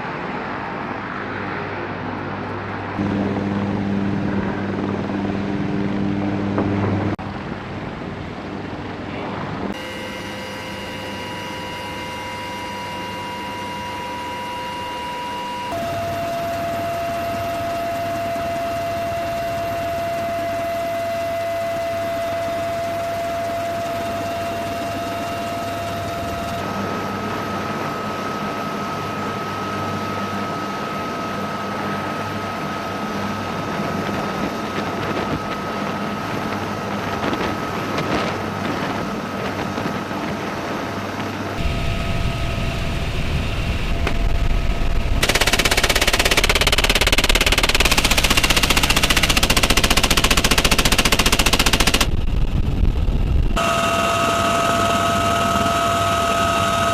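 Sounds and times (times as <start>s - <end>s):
helicopter turbine whine: 0.0s - 56.9s
gatling gun firing bursts: 45.2s - 52.1s.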